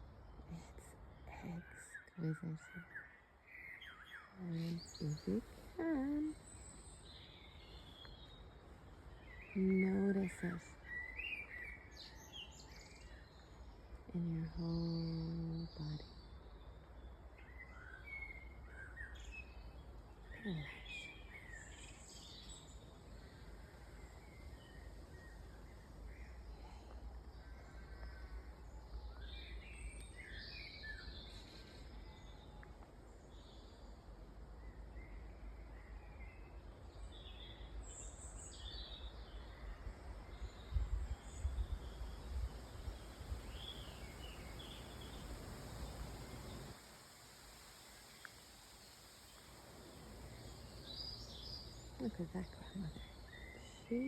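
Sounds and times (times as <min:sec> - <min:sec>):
birds chirping and singing: 0:01.2 - 0:08.4
wind rumble on microphone: 0:39.5 - 0:46.8.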